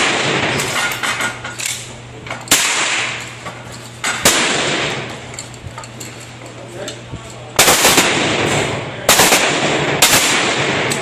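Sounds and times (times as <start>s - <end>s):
gunshots with rolling echo: 4.2s - 5.1s, 7.6s - 11.0s.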